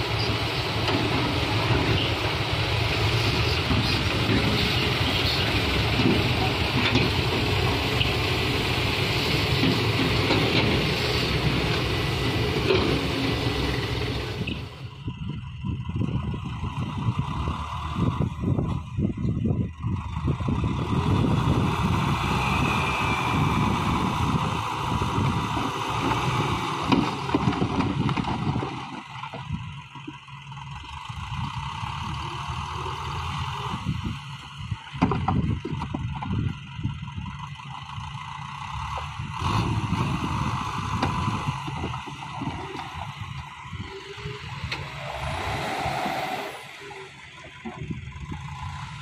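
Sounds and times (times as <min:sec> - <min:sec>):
diesel engine rumbling: 0:00.0 - 0:49.0.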